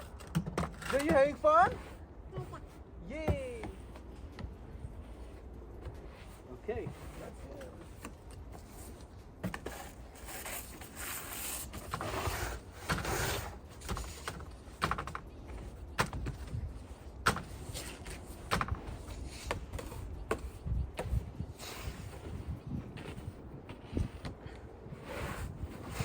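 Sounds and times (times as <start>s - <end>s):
push broom sweeping snow: 1.0s - 4.1s, 4.8s - 26.0s
broom scraping snow: 5.0s - 7.6s, 9.7s - 14.3s, 17.5s - 26.0s.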